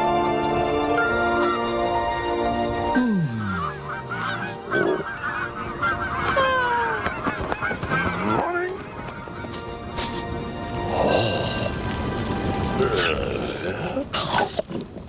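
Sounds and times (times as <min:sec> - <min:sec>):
geese honking and cackling: 0:03.3 - 0:09.7.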